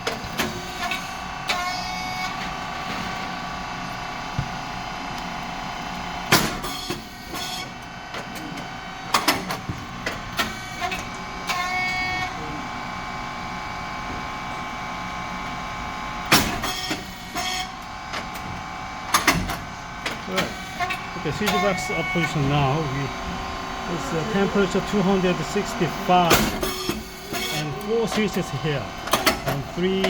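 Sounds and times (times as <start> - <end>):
machine motor and hydraulic hum: 0.0 - 30.0
short tone: 21.4 - 22.9.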